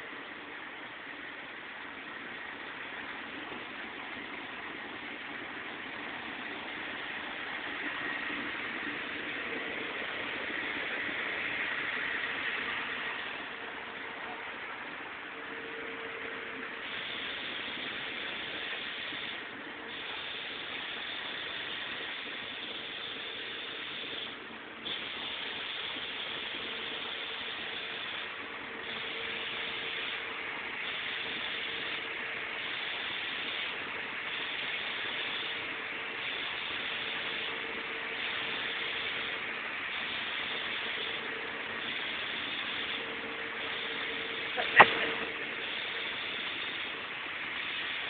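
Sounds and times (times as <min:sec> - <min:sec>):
air compressor hum: 0:05.1 - 0:48.0
air compressor hiss: 0:15.6 - 0:48.0.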